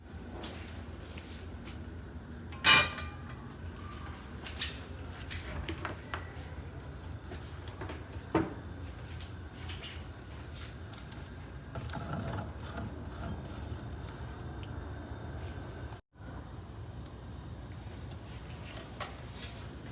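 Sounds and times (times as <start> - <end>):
steady low hum: 0.0 - 19.9
ringing clank: 2.5 - 3.4
cookware knocking and clinking: 2.6 - 3.4.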